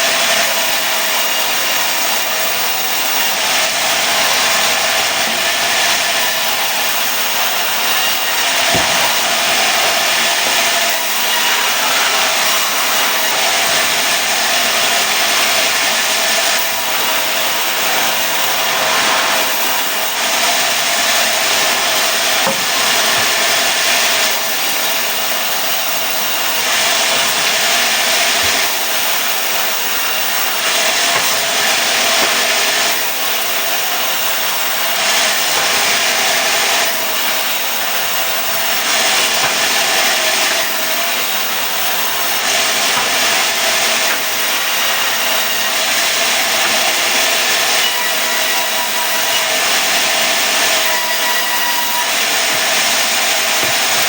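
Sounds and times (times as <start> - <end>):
sawmill saw cutting wood: 0.0 - 54.0.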